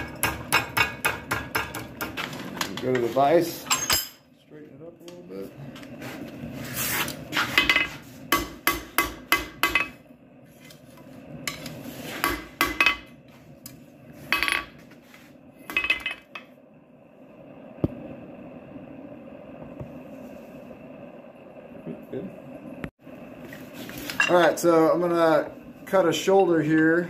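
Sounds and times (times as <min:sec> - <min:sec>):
hammer striking steel: 0:00.0 - 0:02.2, 0:07.6 - 0:10.0, 0:12.2 - 0:13.1
faint steady hum: 0:07.7 - 0:27.0.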